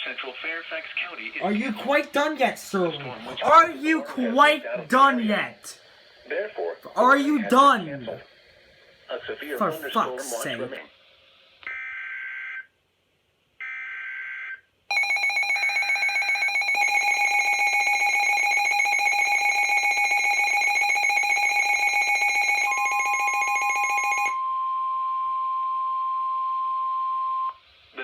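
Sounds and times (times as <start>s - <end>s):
rapidly pulsing electronic alarm: 14.9s - 24.4s.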